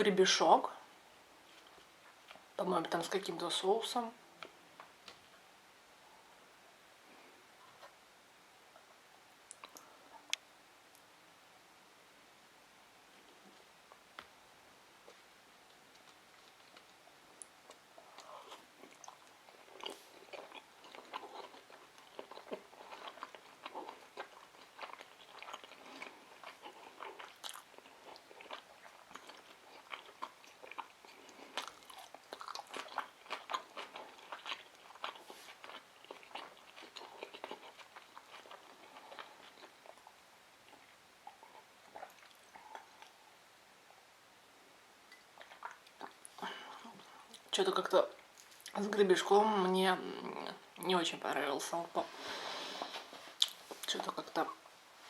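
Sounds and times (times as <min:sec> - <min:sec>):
close-miked chewing: 0:15.0 - 0:43.3, 0:45.1 - 0:49.0.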